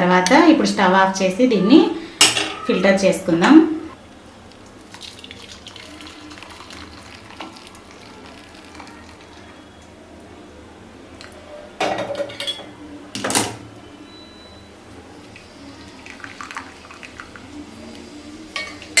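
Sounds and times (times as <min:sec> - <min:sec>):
metal kitchen utensils clattering: 0:02.2 - 0:03.0, 0:11.8 - 0:13.6.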